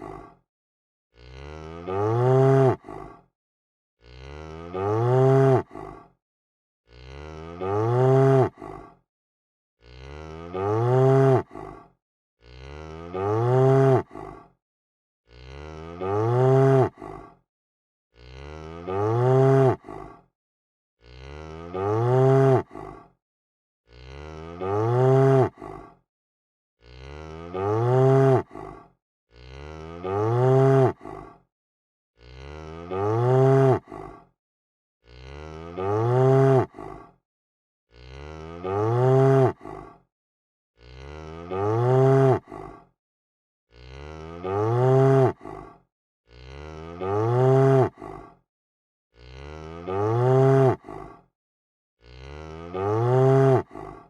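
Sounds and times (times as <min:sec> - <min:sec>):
cow mooing: 0:01.2 - 0:02.8, 0:04.0 - 0:05.6, 0:06.9 - 0:08.6, 0:09.8 - 0:11.4, 0:12.4 - 0:14.0, 0:15.3 - 0:17.0, 0:18.2 - 0:19.8, 0:21.0 - 0:22.6, 0:23.9 - 0:25.6, 0:26.9 - 0:28.4, 0:29.3 - 0:31.0, 0:32.2 - 0:33.9, 0:35.1 - 0:36.7, 0:37.9 - 0:39.6, 0:40.8 - 0:42.5, 0:43.7 - 0:45.4, 0:46.3 - 0:48.0, 0:49.2 - 0:50.8, 0:52.1 - 0:53.6.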